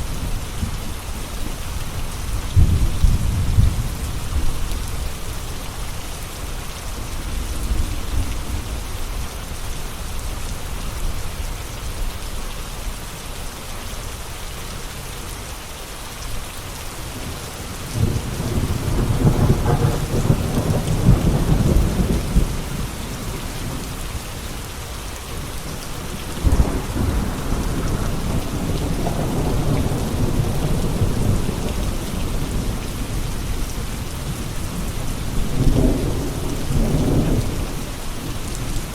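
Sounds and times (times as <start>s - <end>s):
steady rain falling: 0.0s - 38.9s
thunder rolling: 2.5s - 4.6s, 17.1s - 24.1s, 26.0s - 37.9s.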